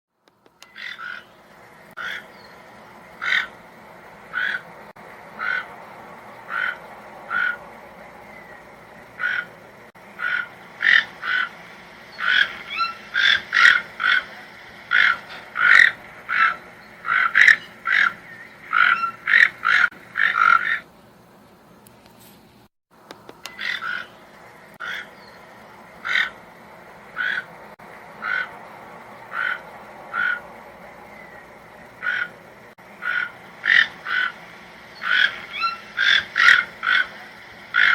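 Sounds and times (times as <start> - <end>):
toucan calling: 0.5 - 3.6, 4.3 - 20.9, 23.2 - 26.4, 27.1 - 37.9.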